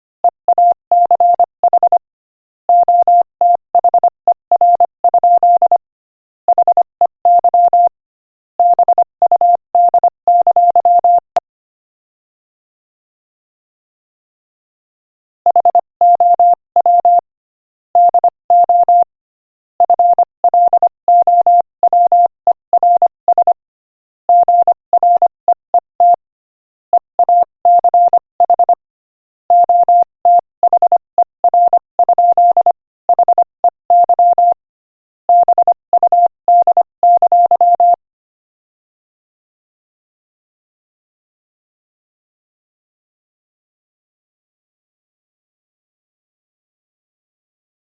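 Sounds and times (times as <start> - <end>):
morse code beeps: 0.5 - 2.0, 2.7 - 5.8, 6.5 - 7.9, 8.6 - 11.2, 15.5 - 17.2, 18.0 - 19.1, 19.8 - 23.6, 24.3 - 26.2, 27.0 - 28.8, 29.5 - 34.6, 35.3 - 38.0.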